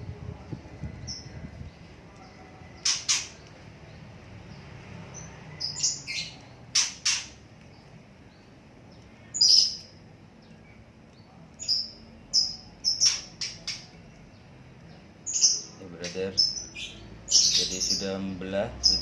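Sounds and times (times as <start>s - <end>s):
bird squawking and chirping: 2.8s - 3.4s, 5.6s - 7.4s, 9.2s - 9.9s, 11.6s - 14.0s, 15.2s - 18.1s.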